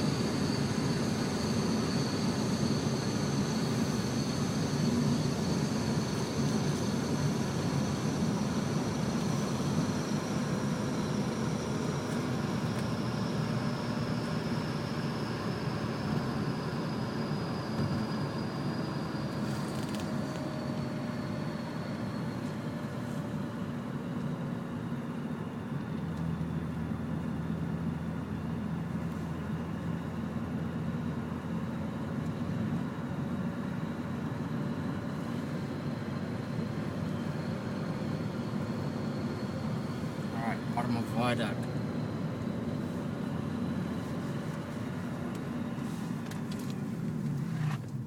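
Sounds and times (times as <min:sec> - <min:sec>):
faint high whine: 0:00.0 - 0:47.8
car engine drone from inside cabin: 0:00.0 - 0:48.0.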